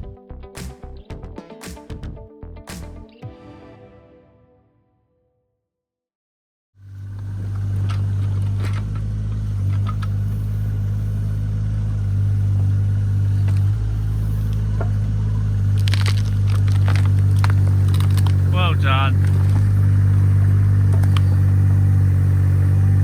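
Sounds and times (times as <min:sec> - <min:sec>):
digger engine running: 0:06.8 - 0:23.0.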